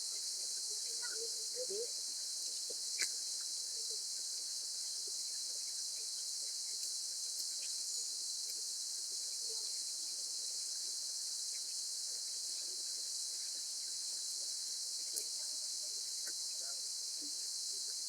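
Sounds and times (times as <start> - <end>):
insects chirping chorus: 0.0 - 18.0
faint ticks: 2.6 - 3.6, 6.7 - 8.7, 15.0 - 15.4, 16.2 - 16.5
small click: 3.0 - 3.2.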